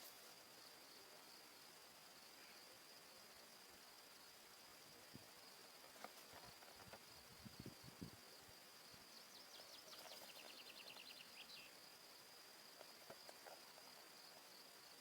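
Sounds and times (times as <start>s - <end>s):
bird chirping trill: 9.3s - 11.8s.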